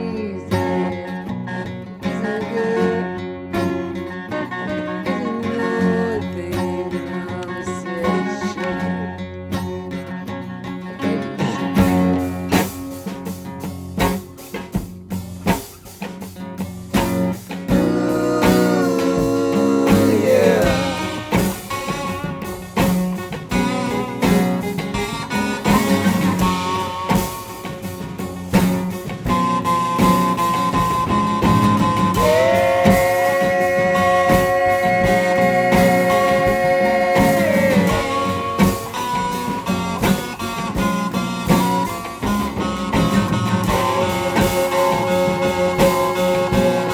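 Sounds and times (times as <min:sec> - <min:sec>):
rock guitar: 0:00.0 - 0:46.9
bass and drums: 0:11.6 - 0:46.9.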